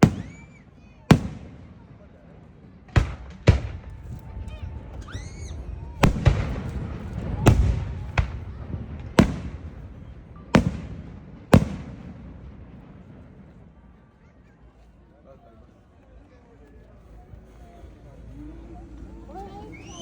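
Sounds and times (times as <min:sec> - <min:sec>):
fireworks bangs: 0:00.0 - 0:13.9.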